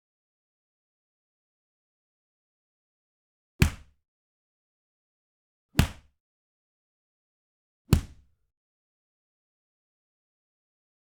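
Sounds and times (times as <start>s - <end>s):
punch hit with deep thump: 3.6s - 3.9s, 5.8s - 6.1s, 7.9s - 8.3s.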